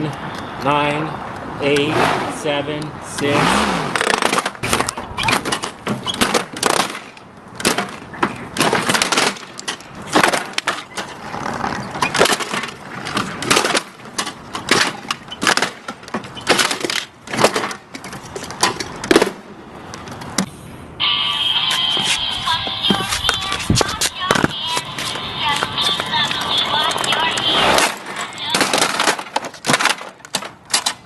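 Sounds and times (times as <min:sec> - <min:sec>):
plastic toy cracking and crunching: 0:04.0 - 0:05.0, 0:08.6 - 0:11.2, 0:12.0 - 0:17.8, 0:27.0 - 0:31.0.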